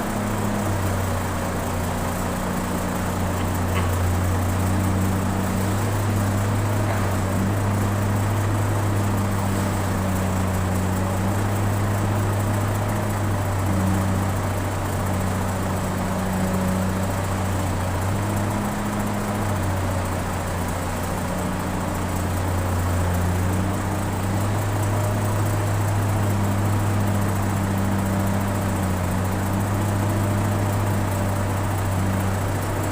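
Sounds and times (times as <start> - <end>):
excavator diesel engine running: 0.0 - 32.9.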